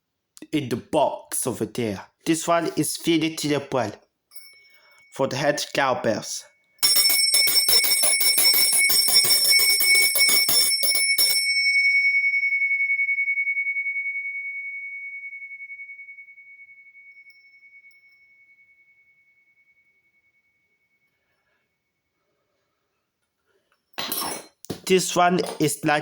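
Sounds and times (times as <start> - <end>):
hand bell ringing: 4.3 - 5.1, 6.8 - 12.9.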